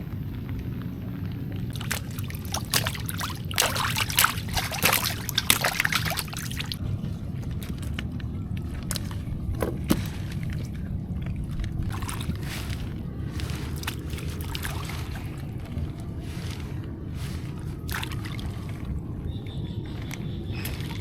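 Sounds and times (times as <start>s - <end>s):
low wind rumble: 0.0s - 21.0s
water splashing and trickling: 0.0s - 21.0s.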